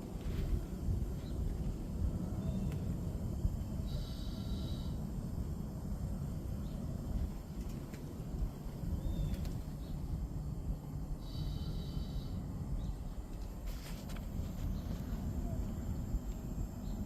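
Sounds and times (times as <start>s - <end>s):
air hissing through tire valve: 3.8s - 5.1s, 11.1s - 17.0s.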